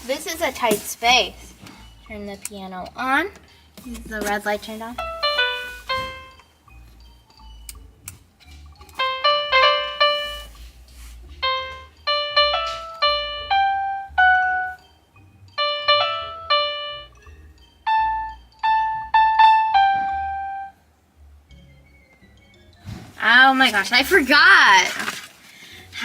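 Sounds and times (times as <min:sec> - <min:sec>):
toy piano notes: 0:01.7 - 0:10.6, 0:11.4 - 0:20.8.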